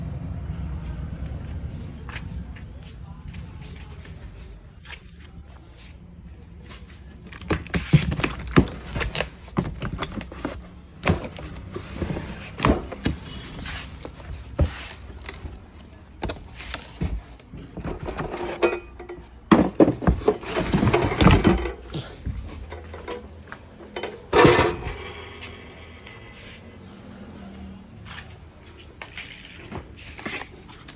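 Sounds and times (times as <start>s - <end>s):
packaging rustling: 7.1s - 18.4s
machine parts knocking and clattering: 16.2s - 26.4s.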